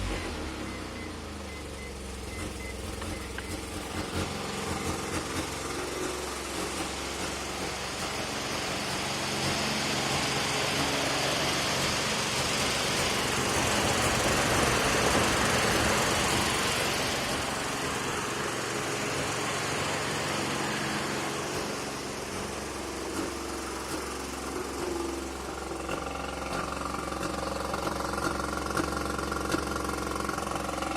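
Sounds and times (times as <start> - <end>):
rotary engine idling unevenly: 0.0 - 30.9.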